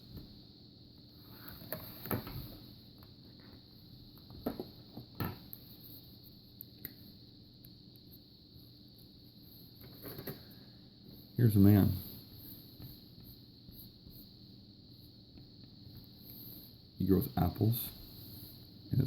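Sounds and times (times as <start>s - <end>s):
faint high-pitched hum: 0.0s - 19.0s.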